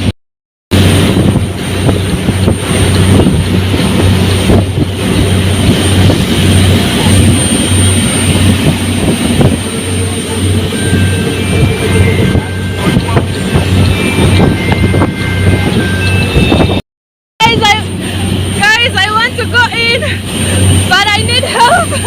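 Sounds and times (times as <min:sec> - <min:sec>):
speedboat engine running: 0:00.7 - 0:16.8, 0:17.4 - 0:22.0
wind noise on microphone: 0:00.7 - 0:16.8.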